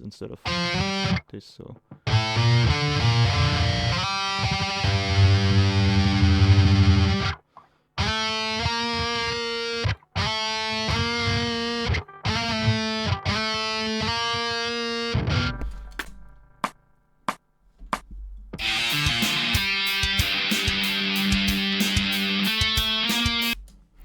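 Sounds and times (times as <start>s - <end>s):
distorted electric guitar riff: 0.5s - 1.2s, 2.0s - 7.4s, 8.0s - 16.0s, 18.6s - 23.7s.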